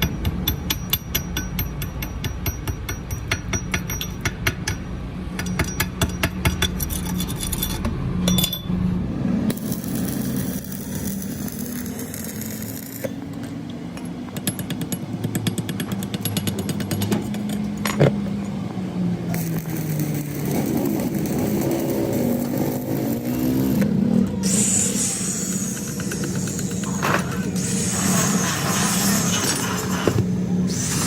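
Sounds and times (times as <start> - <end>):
engine running steadily: 7.9 - 31.0
power tool hammering rapidly: 24.5 - 28.2.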